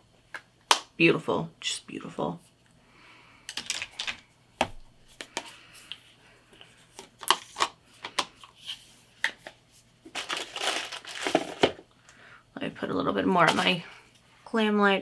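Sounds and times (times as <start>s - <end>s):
small items clicking and tapping: 3.5s - 4.2s.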